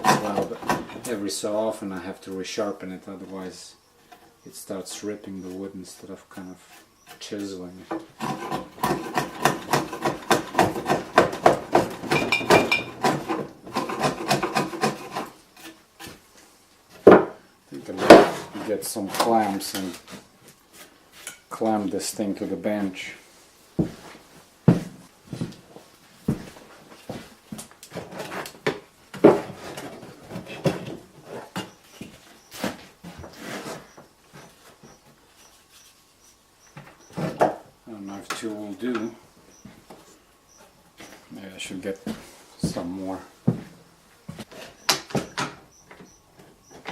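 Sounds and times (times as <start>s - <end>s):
clamps and wood knocking and scraping: 0.0s - 1.2s, 7.8s - 16.2s, 16.9s - 20.2s, 27.9s - 34.9s
chisel being struck into wood: 8.8s - 14.9s.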